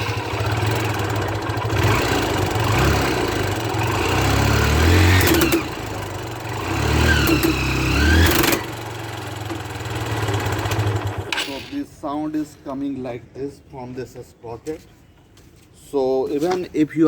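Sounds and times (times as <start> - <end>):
motorcycle engine revving: 0.0 - 11.5.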